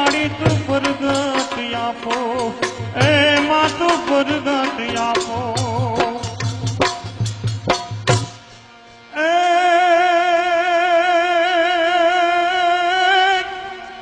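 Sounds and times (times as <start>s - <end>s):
drum strokes: 0.0s - 8.7s
person singing long held note: 9.1s - 14.0s.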